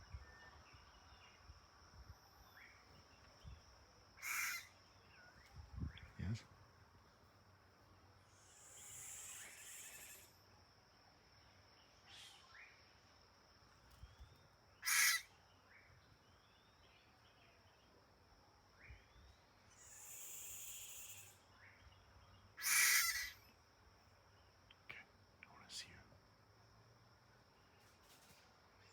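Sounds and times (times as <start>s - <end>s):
hyrax sharp cries: 4.2s - 4.7s, 14.8s - 15.3s, 22.6s - 23.4s.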